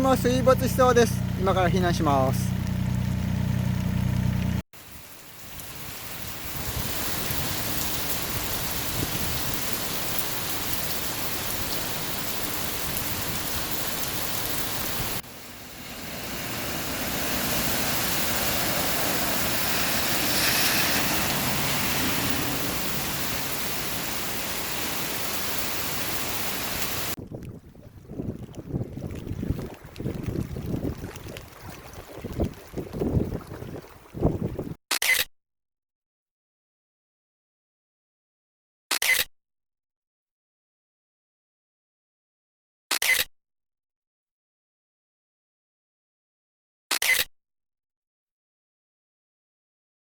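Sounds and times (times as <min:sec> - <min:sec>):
heavy rain pouring: 0:04.8 - 0:27.2.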